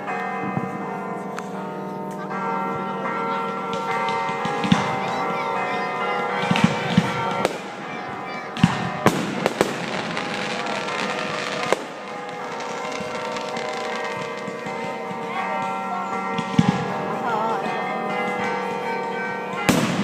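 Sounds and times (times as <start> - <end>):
fireworks bangs: 3.8 - 5.2, 6.4 - 15.6, 19.7 - 20.0.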